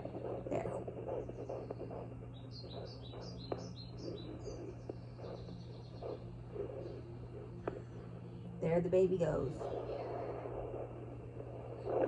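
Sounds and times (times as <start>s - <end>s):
doppler heartbeat pulses: 0.0s - 12.0s
speaker hum and hiss: 0.0s - 12.0s
bird chirping: 1.0s - 7.0s.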